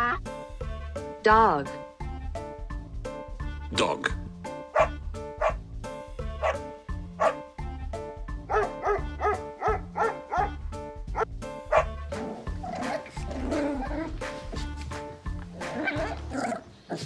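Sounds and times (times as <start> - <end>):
light children's music: 0.0 - 17.0
dog barking: 4.7 - 5.6, 6.4 - 7.5, 8.5 - 10.6, 11.7 - 14.2, 15.6 - 17.0.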